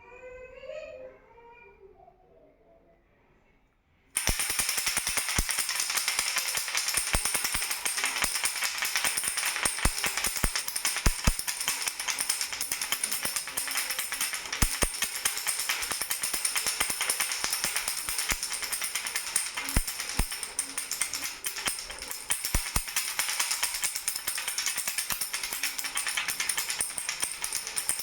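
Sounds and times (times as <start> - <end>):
baby's rattle shaking: 4.2 - 28.0.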